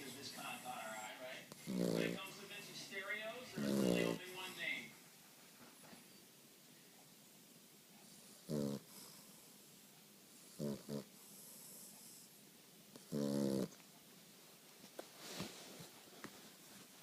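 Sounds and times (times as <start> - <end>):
puppy snoring: 0.0 - 2.8, 3.5 - 4.6, 8.0 - 9.5, 10.3 - 13.8.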